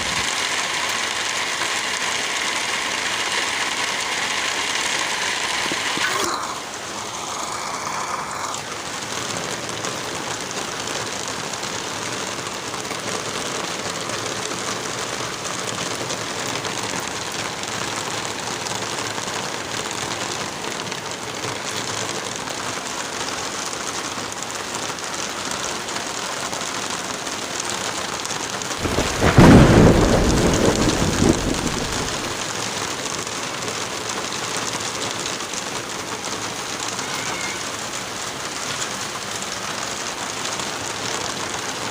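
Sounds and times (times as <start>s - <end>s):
steady rain falling: 0.0s - 41.9s
thunder clap rumbling: 28.8s - 32.5s.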